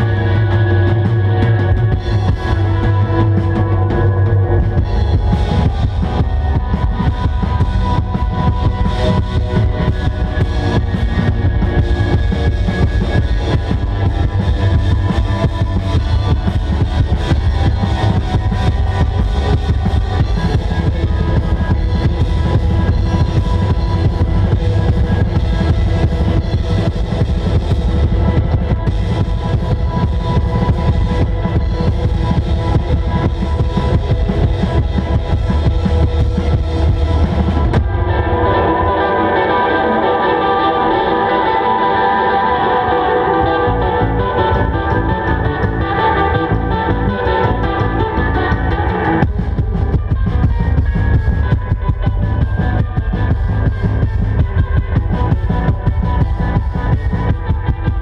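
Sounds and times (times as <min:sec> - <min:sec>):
rock band playing: 0:00.0 - 0:58.0.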